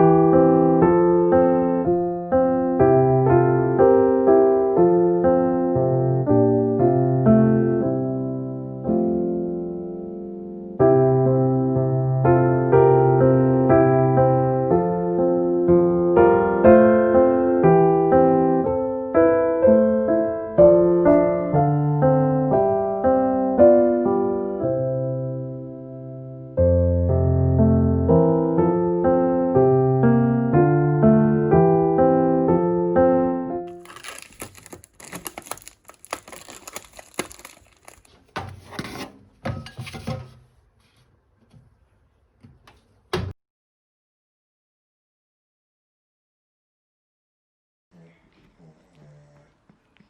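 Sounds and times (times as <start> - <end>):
objects crinkling and clicking: 33.7 - 40.3.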